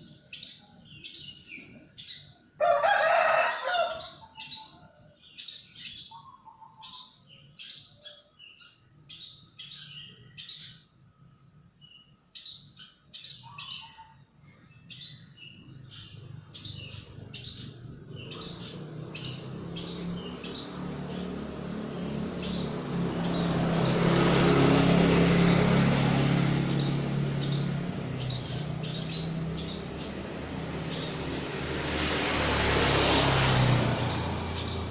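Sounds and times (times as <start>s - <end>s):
small bird chirping: 0.0s - 2.4s, 3.8s - 11.0s, 11.8s - 32.3s, 34.0s - 34.9s
vehicle passing: 15.4s - 34.9s.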